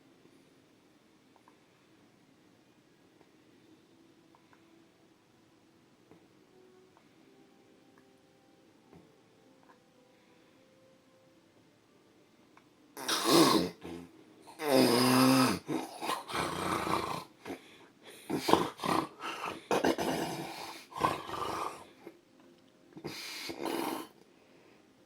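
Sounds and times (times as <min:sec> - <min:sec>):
quiet breaths: 0:00.0 - 0:13.0, 0:15.5 - 0:25.0
man snoring loudly: 0:14.6 - 0:17.6, 0:18.3 - 0:21.9.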